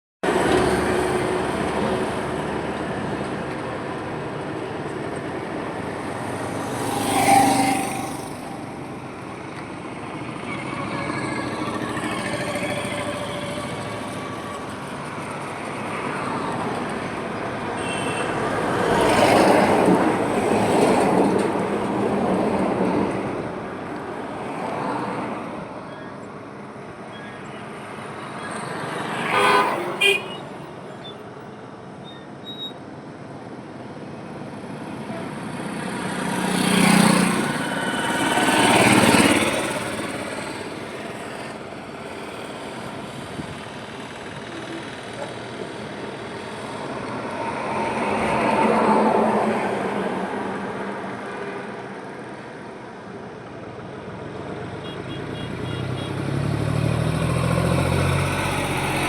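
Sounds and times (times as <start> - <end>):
highway traffic passing: 0.2 - 59.0.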